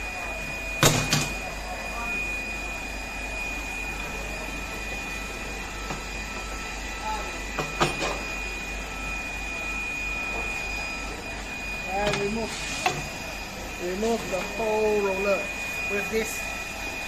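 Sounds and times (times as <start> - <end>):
machine hum with high whine: 0.0 - 17.0.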